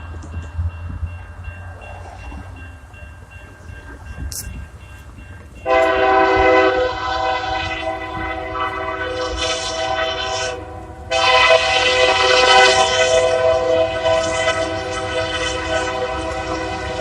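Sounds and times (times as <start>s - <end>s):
low rumble of train: 0.0s - 17.0s
locomotive air horn: 5.6s - 17.0s.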